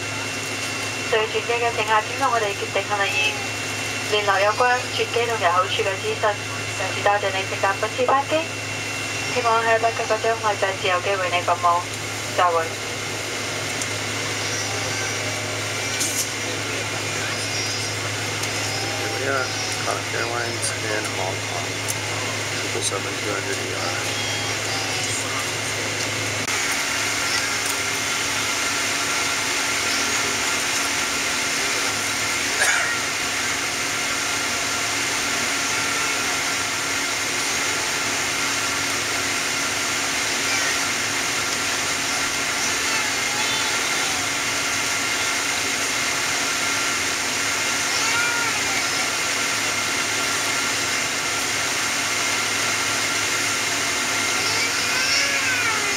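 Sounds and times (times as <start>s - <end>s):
air-conditioning rush: 0.0s - 55.9s
idling jet engines: 0.0s - 55.9s.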